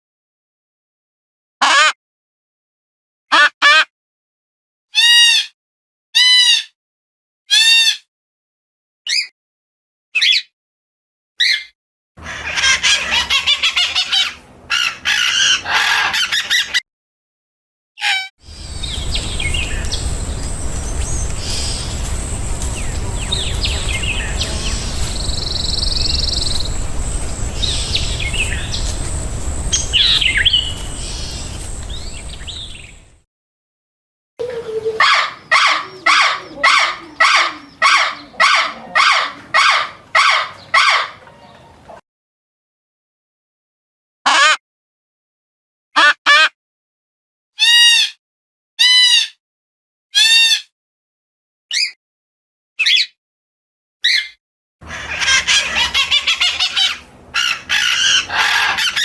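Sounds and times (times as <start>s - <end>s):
birds chirping and calling: 11.4s - 16.8s, 18.1s - 33.2s, 34.4s - 42.0s, 54.0s - 59.0s
low rumble and hiss: 18.5s - 33.2s.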